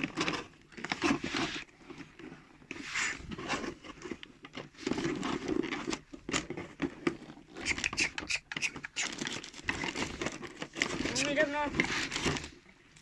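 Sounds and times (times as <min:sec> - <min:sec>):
packaging scraping and crackling: 0:08.7 - 0:12.6.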